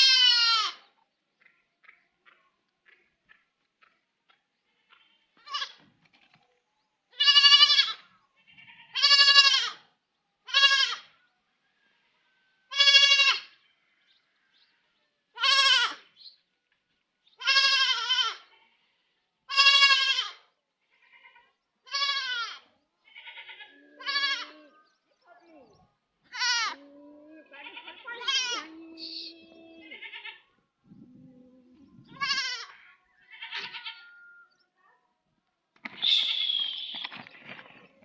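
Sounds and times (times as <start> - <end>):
baby goat bleating: 0.0 - 0.9, 4.8 - 5.9, 7.1 - 11.1, 12.7 - 13.6, 15.3 - 16.1, 17.4 - 18.8, 19.5 - 24.8, 26.2 - 30.5, 31.7 - 34.1.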